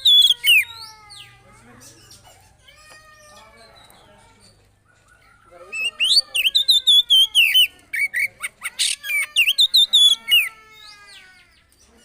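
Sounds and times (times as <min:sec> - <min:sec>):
songbird singing fast: 0:05.6 - 0:10.5.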